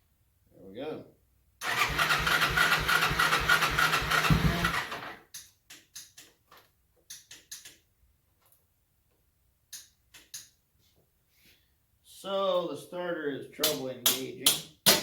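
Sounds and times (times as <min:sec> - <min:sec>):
electric starter cranking: 0:01.6 - 0:05.2.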